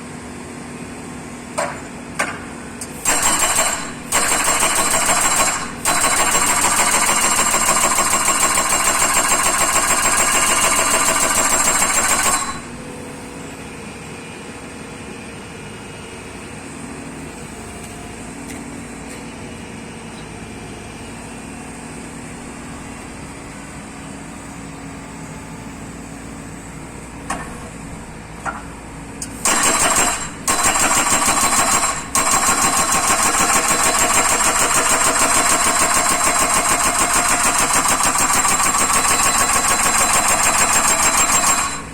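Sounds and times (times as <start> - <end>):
hydraulic breaker hammer pounding: 1.6 - 12.8, 28.4 - 41.9.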